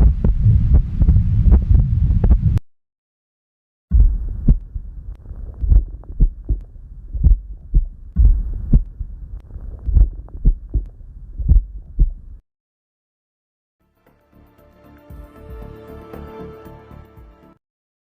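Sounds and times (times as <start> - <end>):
heartbeat through stethoscope: 0.0 - 2.6, 3.9 - 12.4
soft background rumble: 0.0 - 2.6, 3.9 - 12.4.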